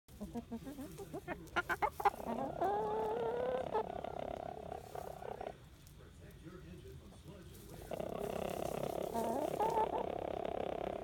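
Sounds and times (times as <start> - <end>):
rooster clucking: 0.1 - 5.6, 7.8 - 11.0.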